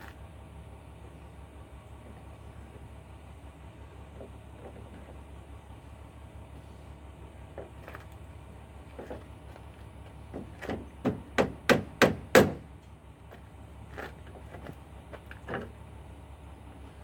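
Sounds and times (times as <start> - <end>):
sharp knocks on hard surface: 10.4 - 12.6.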